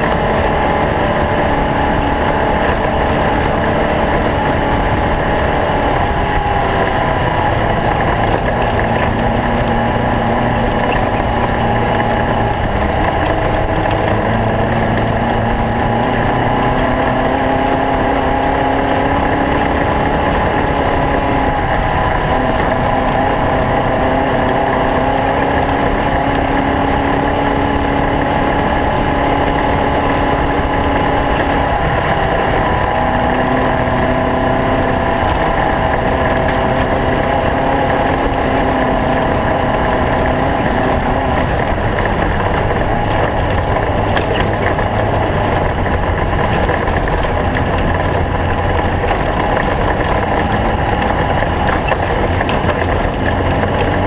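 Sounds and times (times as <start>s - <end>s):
boat engine running: 0.0s - 54.0s.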